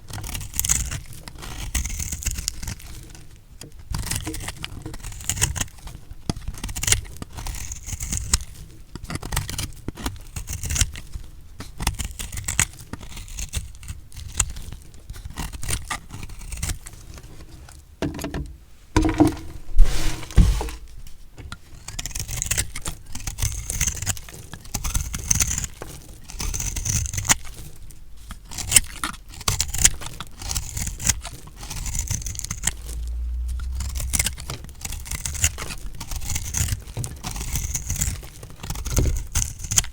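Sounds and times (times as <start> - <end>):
heavy knock: 18.0 - 20.8
knife cutting through soap: 18.0 - 20.9.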